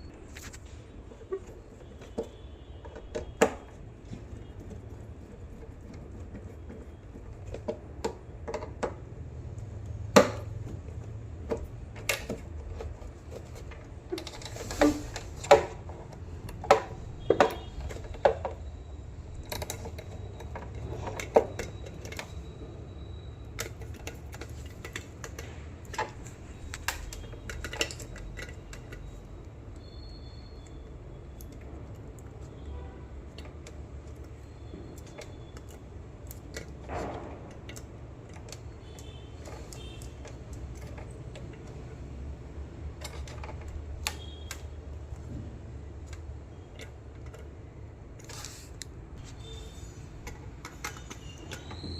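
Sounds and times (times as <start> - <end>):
clicks and knocks of small tools: 23.4 - 29.8, 42.8 - 45.4, 50.1 - 51.9.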